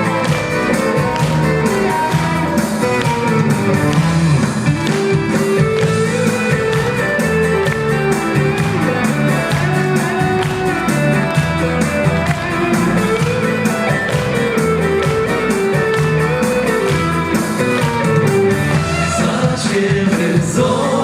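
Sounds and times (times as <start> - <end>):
band playing instrumental: 0.0 - 21.0
guitar: 0.0 - 21.0.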